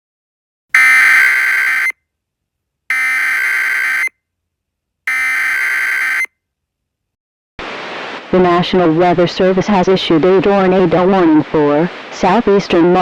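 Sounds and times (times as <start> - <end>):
raspy digital data tone bursts: 0.8 - 1.9, 2.9 - 4.1, 5.1 - 6.3.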